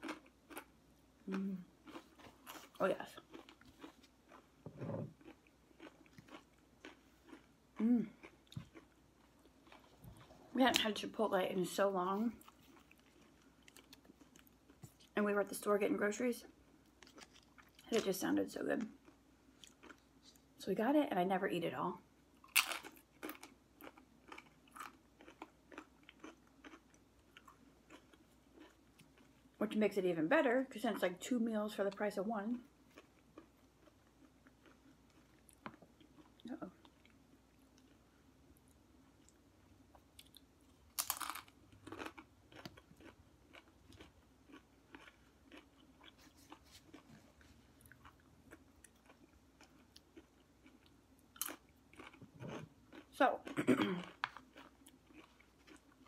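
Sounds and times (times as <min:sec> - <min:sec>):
chewing crunchy chips: 0:00.0 - 0:10.8, 0:12.4 - 0:15.2, 0:16.5 - 0:18.2, 0:18.8 - 0:20.4, 0:22.4 - 0:29.6, 0:32.8 - 0:38.1, 0:39.1 - 0:56.0
person crunching tortilla chip: 0:40.2 - 0:47.1.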